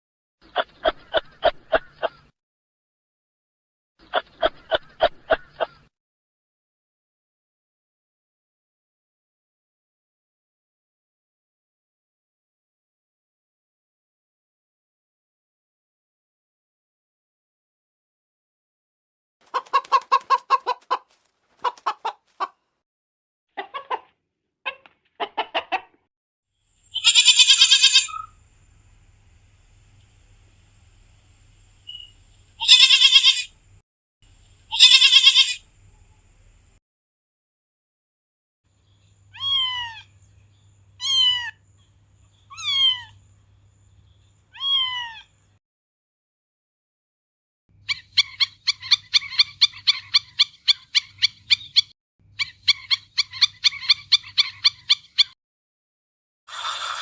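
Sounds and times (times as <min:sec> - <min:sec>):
chicken clucking: 0:00.5 - 0:02.3, 0:04.0 - 0:05.9, 0:19.4 - 0:22.6, 0:23.6 - 0:26.0
chicken shrill call: 0:26.9 - 0:28.4, 0:32.6 - 0:33.5, 0:34.7 - 0:35.6
cat meowing: 0:27.0 - 0:28.3, 0:32.6 - 0:33.5, 0:34.7 - 0:35.6, 0:39.3 - 0:40.1, 0:41.0 - 0:41.6, 0:42.5 - 0:43.2, 0:44.6 - 0:45.3.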